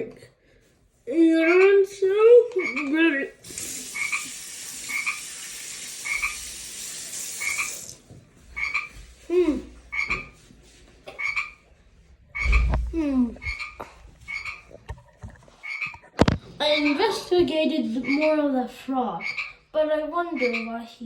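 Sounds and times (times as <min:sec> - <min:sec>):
frog croaking: 0:02.6 - 0:03.0, 0:06.0 - 0:06.4, 0:08.6 - 0:08.9, 0:09.9 - 0:10.2, 0:11.2 - 0:11.6, 0:12.4 - 0:12.8, 0:13.4 - 0:14.6, 0:15.6 - 0:16.0, 0:19.2 - 0:19.6.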